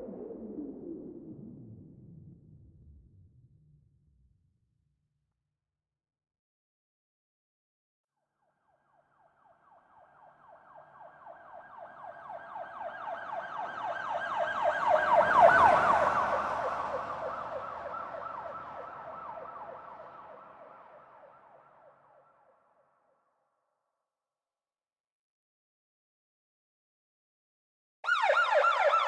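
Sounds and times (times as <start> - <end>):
police siren yelping: 10.5 - 20.7, 28.0 - 29.0.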